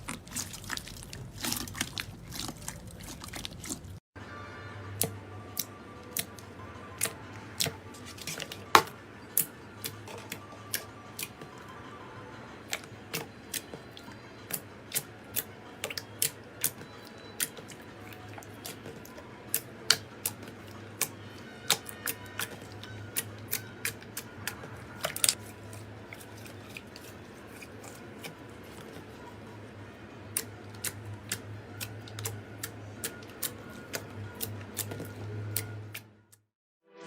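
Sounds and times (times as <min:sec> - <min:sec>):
slime clicking and crackling: 0:00.0 - 0:04.0.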